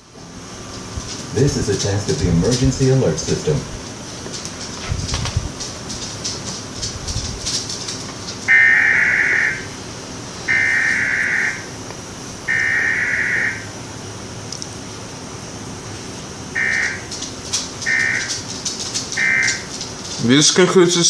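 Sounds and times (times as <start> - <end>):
digital data tone bursts: 8.5 - 9.7, 10.5 - 11.7, 12.5 - 13.7, 16.6 - 17.1, 19.2 - 19.7.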